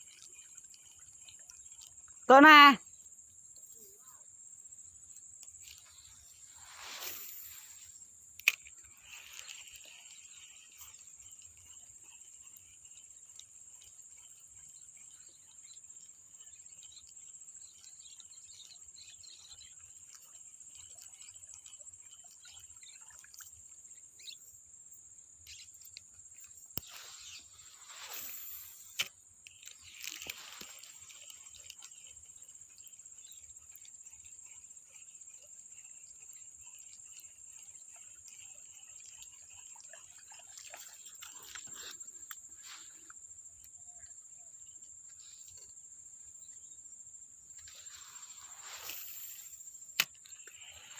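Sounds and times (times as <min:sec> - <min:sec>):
insects chirring: 0:00.0 - 0:50.9
rustling swish: 0:06.5 - 0:08.0.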